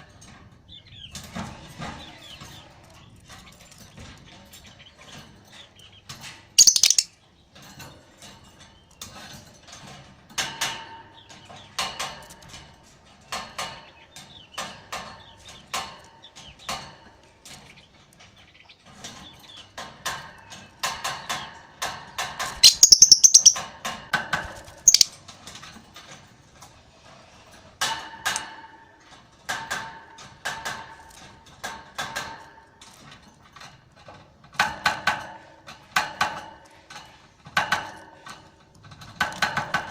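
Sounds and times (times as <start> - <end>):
lovebird chirping: 6.6 - 7.1, 22.6 - 23.6, 24.9 - 25.1.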